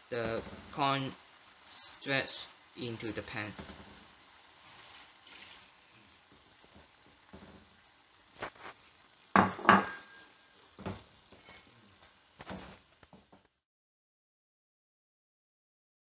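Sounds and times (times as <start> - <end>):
faint sizzle: 0.0 - 13.6
metal utensil clanking against pan: 9.4 - 10.3.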